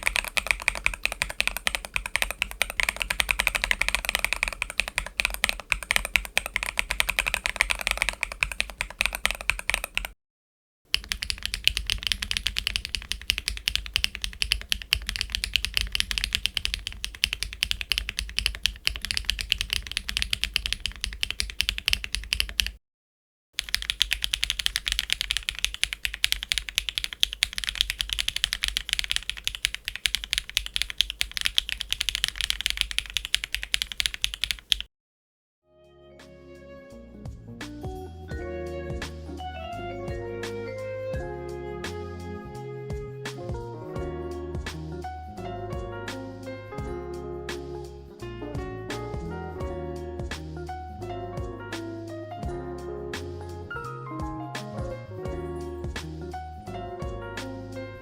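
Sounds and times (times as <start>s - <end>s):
rapid typing on mechanical keyboard: 0.0s - 10.2s, 10.9s - 22.8s, 23.6s - 34.9s.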